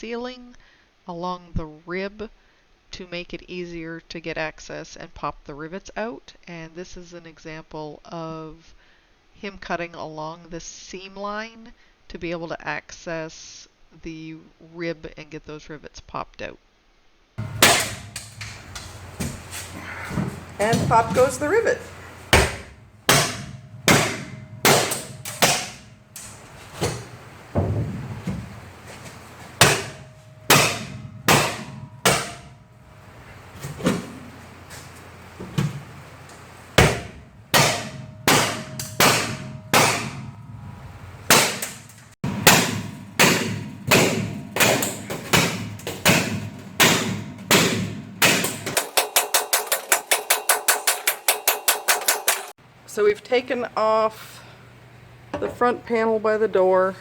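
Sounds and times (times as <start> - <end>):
sledgehammer striking sheet metal: 17.4 - 52.6.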